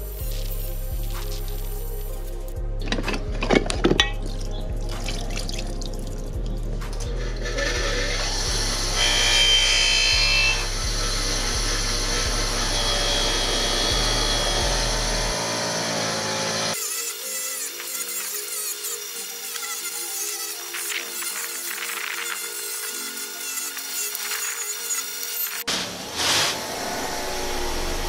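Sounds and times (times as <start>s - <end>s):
background music with beat: 0.0s - 9.2s
abrasive wheel whirring on metal: 7.1s - 16.8s.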